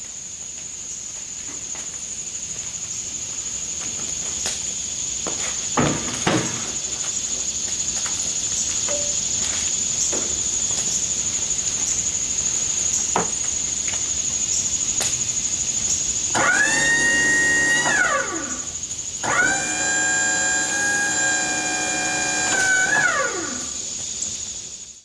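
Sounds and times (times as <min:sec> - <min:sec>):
rising whine: 0:16.4 - 0:24.0.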